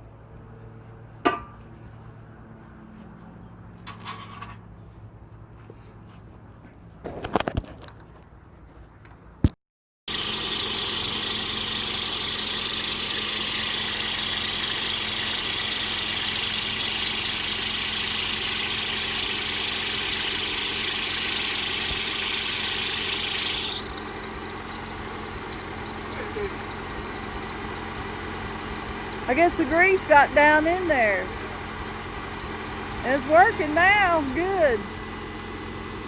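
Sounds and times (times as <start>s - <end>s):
tractor engine running: 10.1s - 36.0s.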